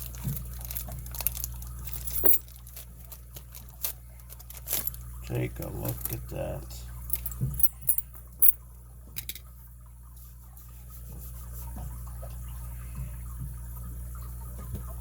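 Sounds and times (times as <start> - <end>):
plastic packaging rustling: 0.0 - 5.1.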